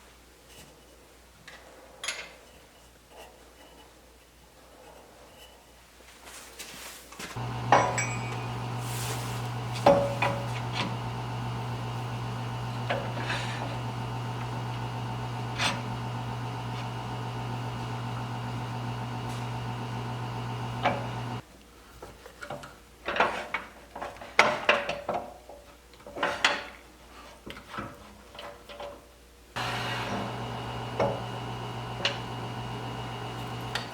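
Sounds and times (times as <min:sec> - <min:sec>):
wood lathe motor humming: 0:07.4 - 0:21.4, 0:29.6 - 0:33.9.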